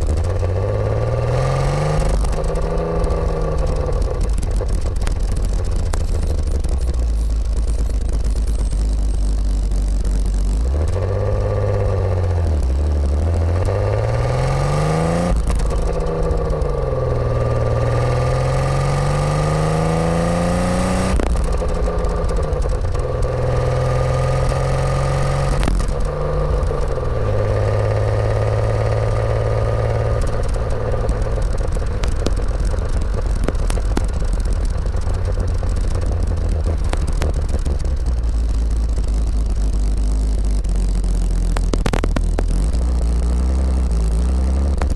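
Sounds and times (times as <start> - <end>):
car engine revving: 0.0 - 44.9.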